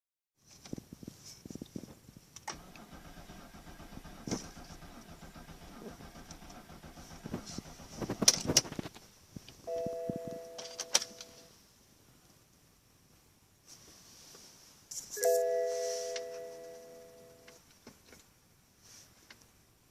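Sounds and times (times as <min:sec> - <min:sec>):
faint electrical hum: 0:08.4 - 0:19.9
two-note electronic chime: 0:09.7 - 0:11.4, 0:15.2 - 0:17.5.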